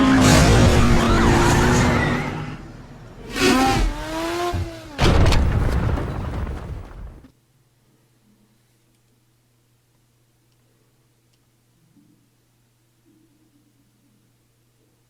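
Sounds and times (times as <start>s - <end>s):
tyres squealing: 0.0s - 5.0s.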